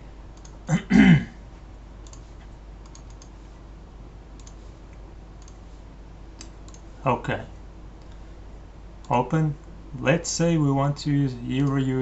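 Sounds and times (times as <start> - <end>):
computer mouse clicks: 0.4 - 0.6, 2.0 - 3.4, 4.4 - 5.6, 6.4 - 6.9.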